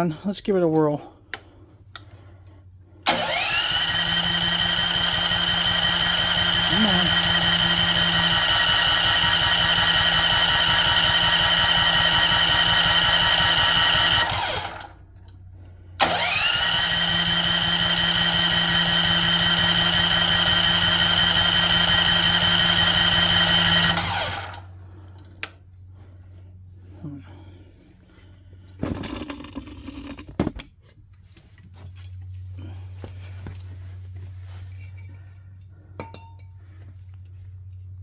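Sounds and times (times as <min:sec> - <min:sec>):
electric starter cranking engine: 0:03.0 - 0:15.0, 0:16.0 - 0:24.8.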